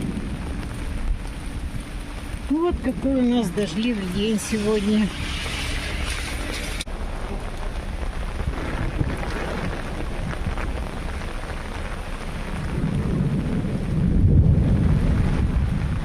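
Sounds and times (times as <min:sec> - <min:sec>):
rain falling: 0:00.0 - 0:16.0
thunder rumbling: 0:00.0 - 0:16.0.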